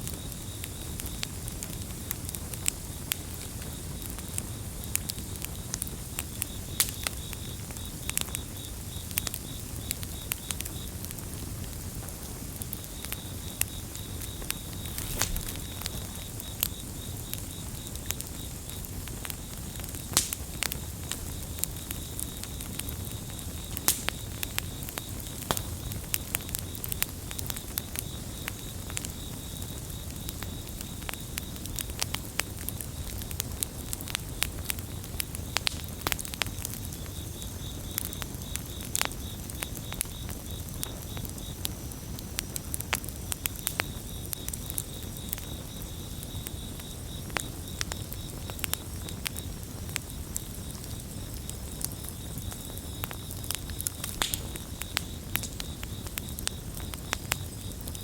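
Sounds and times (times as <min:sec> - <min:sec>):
campfire crackling: 0:00.0 - 0:58.0
cricket chirping: 0:00.0 - 0:58.0.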